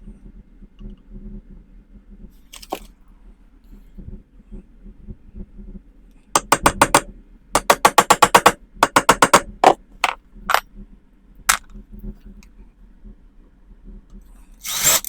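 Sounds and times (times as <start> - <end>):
sharp knocks on wood: 6.4 - 10.6.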